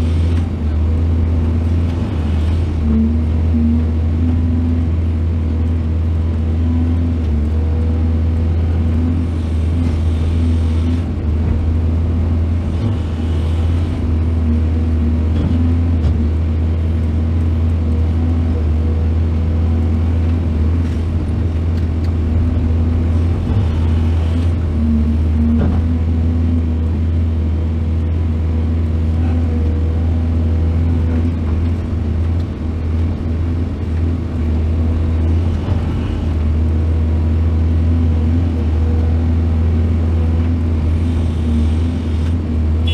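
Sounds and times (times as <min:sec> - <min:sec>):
diesel engine droning: 0:00.0 - 0:42.9.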